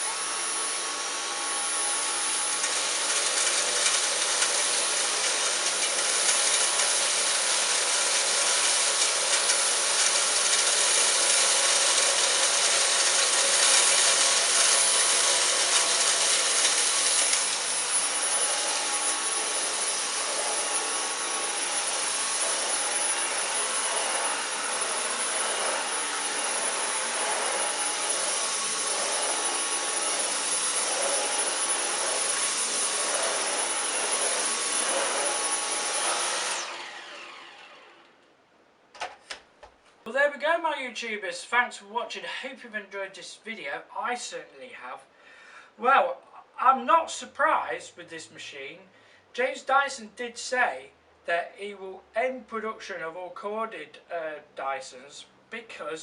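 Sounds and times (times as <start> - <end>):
vacuum cleaner motor whine: 0.0 - 38.2.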